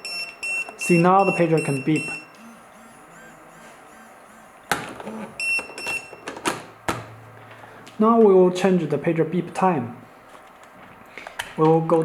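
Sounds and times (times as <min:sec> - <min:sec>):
high electronic pager beeps: 0:00.0 - 0:04.2, 0:05.1 - 0:06.4
low buzz: 0:01.7 - 0:07.9.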